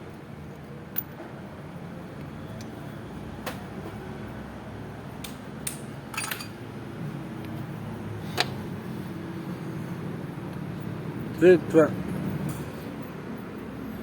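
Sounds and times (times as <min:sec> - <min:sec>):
metal tools clinking: 0:06.1 - 0:06.6.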